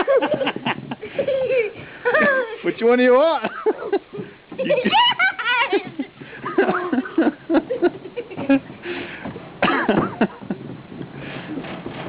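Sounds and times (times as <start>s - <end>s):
child coughing: 9.6s - 10.2s.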